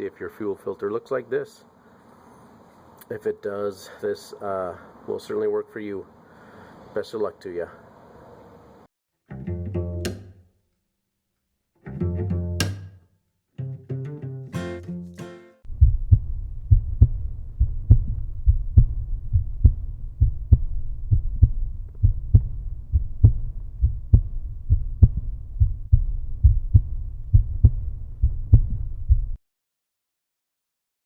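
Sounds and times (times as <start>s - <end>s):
deep pulsing bass line: 15.7s - 29.4s
kick drum beat: 15.8s - 29.4s.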